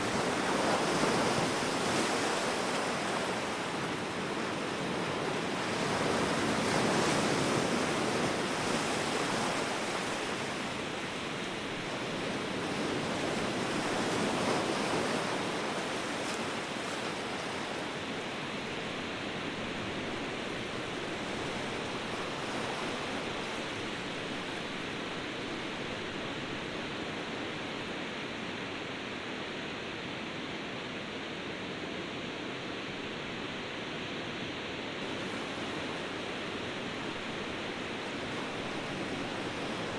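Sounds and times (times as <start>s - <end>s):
ocean waves rushing: 35.0s - 39.9s.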